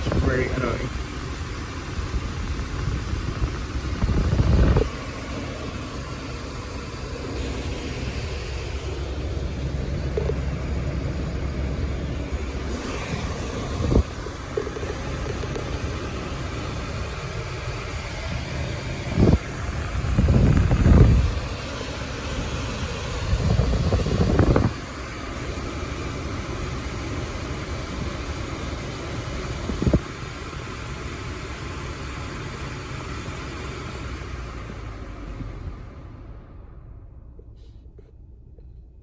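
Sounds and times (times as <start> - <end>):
low thumps and rumbles: 0.0 - 24.8, 29.5 - 30.2
air conditioning blower hissing: 0.0 - 38.0.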